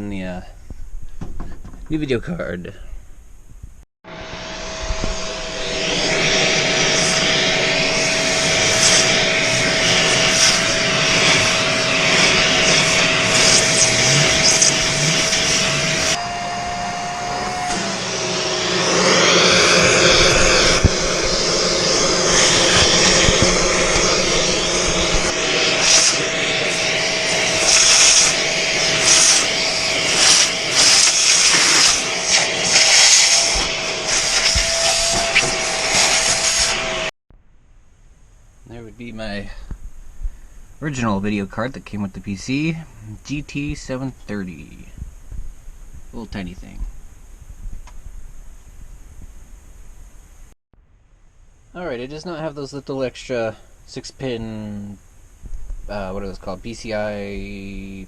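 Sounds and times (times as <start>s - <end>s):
vacuum cleaner running: 4.1s - 37.1s.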